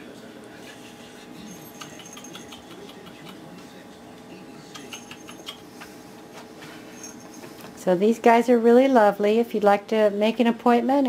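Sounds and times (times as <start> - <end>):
puppies clicking and scuffling: 1.5 - 3.7, 4.7 - 7.8.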